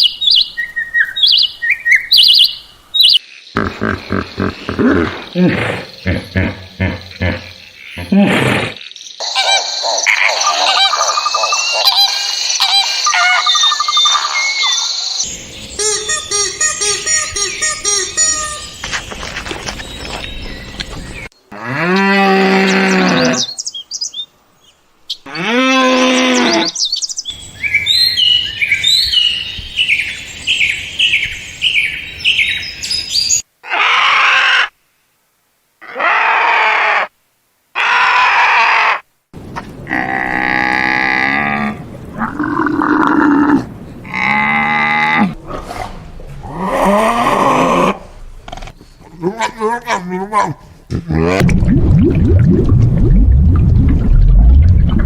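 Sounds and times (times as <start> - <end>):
bird chirping rapidly: 0.0 - 8.1, 9.2 - 19.1.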